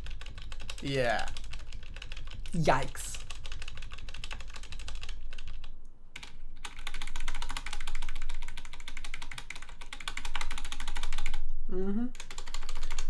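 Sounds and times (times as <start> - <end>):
mechanical keyboard keys clacking: 3.3 - 11.4, 12.2 - 13.0.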